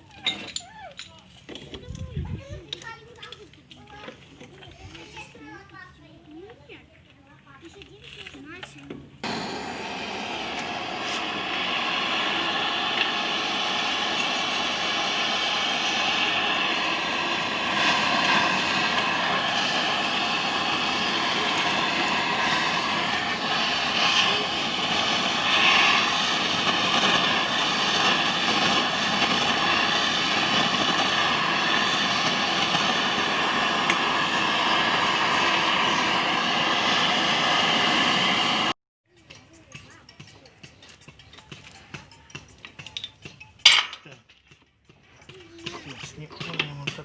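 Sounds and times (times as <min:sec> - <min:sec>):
mechanical whir with high whine: 0:09.2 - 0:38.8.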